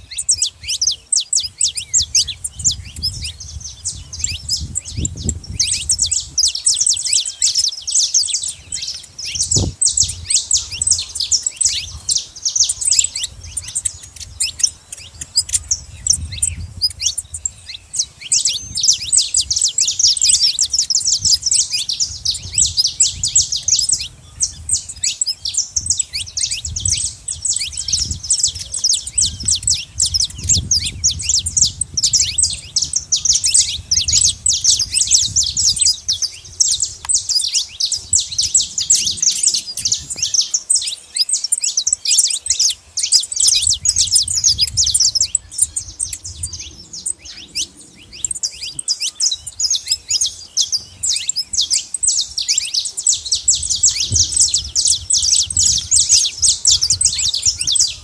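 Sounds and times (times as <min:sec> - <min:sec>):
finches chirping: 0:00.0 - 0:58.0.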